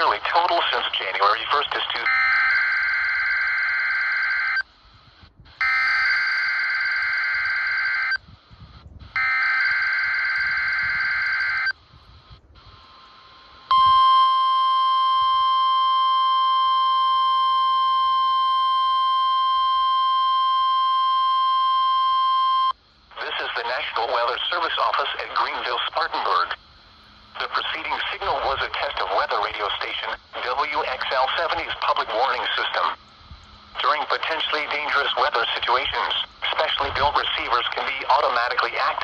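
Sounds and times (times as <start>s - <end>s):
steady warning alarm tone: 0.0s - 4.8s, 5.6s - 8.4s, 9.1s - 39.0s.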